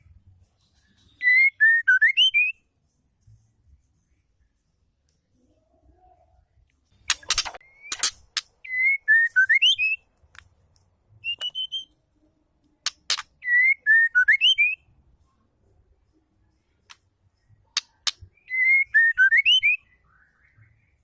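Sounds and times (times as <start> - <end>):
bird harsh clicks: 7.0 - 9.6, 12.8 - 13.5, 17.7 - 18.4
bird whistled phrase: 11.2 - 11.9, 18.4 - 19.8.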